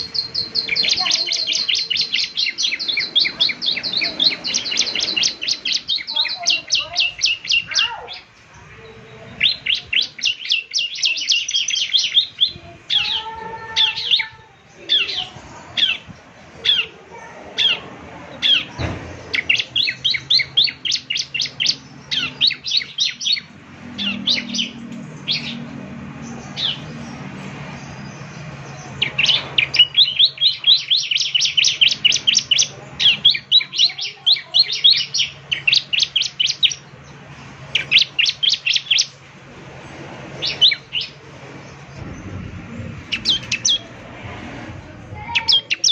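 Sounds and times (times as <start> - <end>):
bird chirping high notes: 0.0 - 16.0, 40.4 - 45.9
faint low hum: 41.2 - 45.7.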